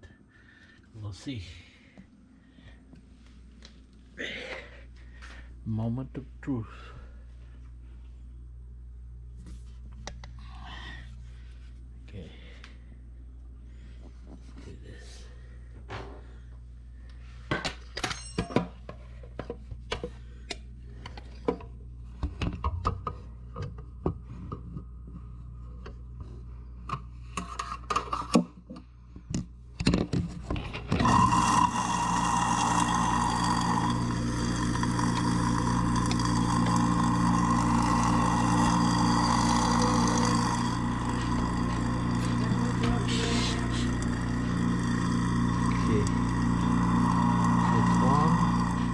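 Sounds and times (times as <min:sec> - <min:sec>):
garbage disposal running: 0:30.9 - 0:48.9.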